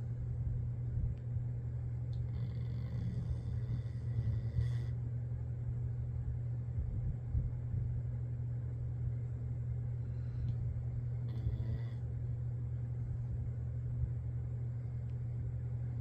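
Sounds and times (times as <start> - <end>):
low rumbling snoring: 2.2 - 5.0, 11.2 - 12.2.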